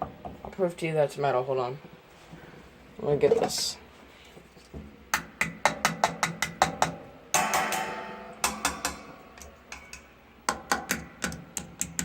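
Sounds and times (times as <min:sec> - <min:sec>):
taps on metal fan body: 0:05.1 - 0:12.0
ringing metal strike: 0:07.4 - 0:09.1.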